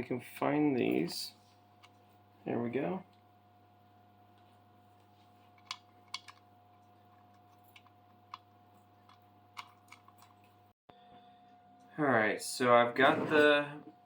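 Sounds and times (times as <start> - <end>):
low steady hum: 0.0 - 14.0
small parts clicking and tapping: 5.5 - 6.5, 7.1 - 10.6.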